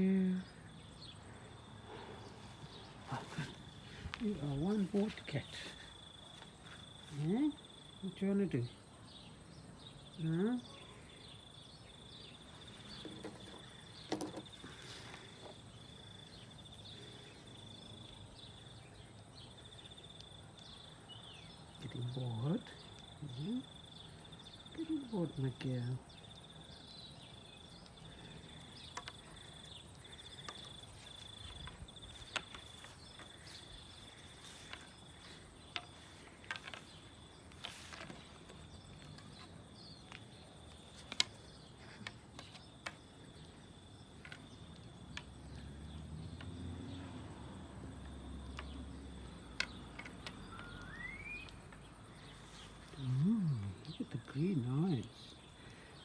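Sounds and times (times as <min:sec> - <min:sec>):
high-pitched insect trill: 0:13.6 - 0:18.2, 0:42.6 - 0:53.8
small clicks and taps: 0:28.6 - 0:45.4, 0:48.0 - 0:51.8.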